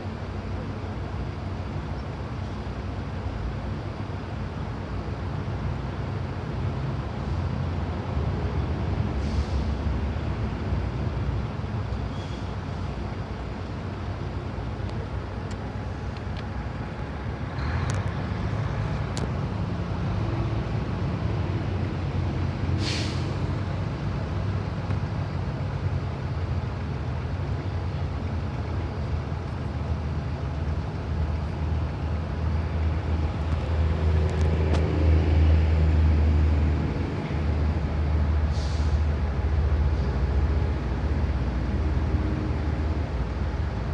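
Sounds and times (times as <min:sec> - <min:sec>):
heavy vehicle engines rumbling: 0:00.0 - 0:43.9
air brake hiss: 0:09.2 - 0:09.8, 0:12.1 - 0:12.9, 0:22.7 - 0:23.5, 0:38.5 - 0:39.1.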